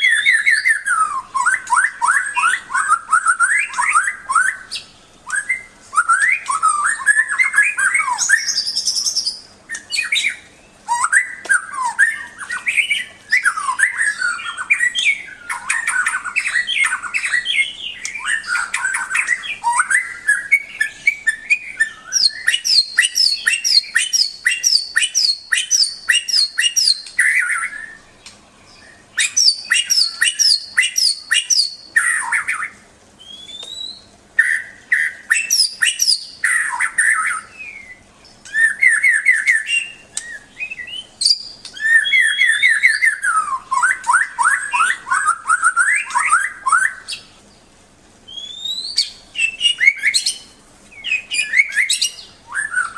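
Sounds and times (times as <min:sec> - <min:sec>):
bird singing whistled phrases: 0:00.0 - 0:47.3, 0:48.3 - 0:52.9.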